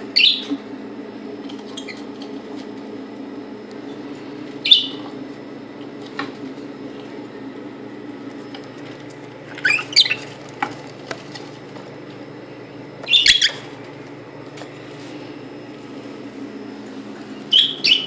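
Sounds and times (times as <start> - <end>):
steady low hum: 0.0 - 18.0
parrot calling: 0.1 - 0.5, 4.6 - 5.0, 9.6 - 10.3, 13.0 - 13.7, 17.5 - 18.0.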